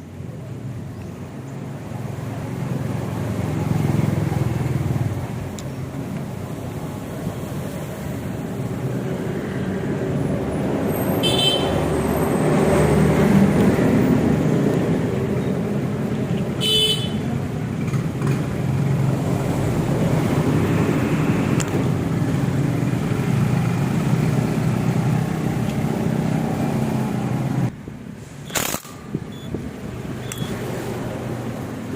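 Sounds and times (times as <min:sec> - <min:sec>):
motorcycle horn toots: 0:11.2 - 0:11.7, 0:16.6 - 0:17.3.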